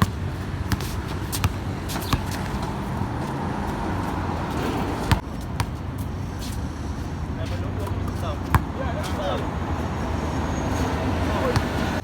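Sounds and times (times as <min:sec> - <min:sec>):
basketball bouncing on court: 0:00.0 - 0:02.9, 0:05.0 - 0:05.7, 0:08.1 - 0:08.7.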